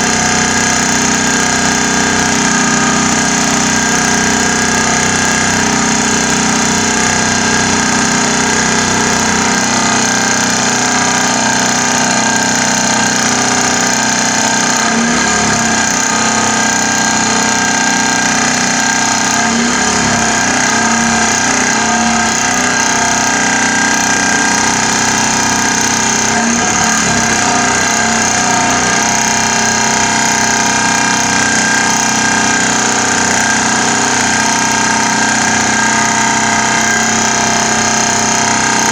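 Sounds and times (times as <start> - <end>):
pile driver droning: 0.0 - 38.9.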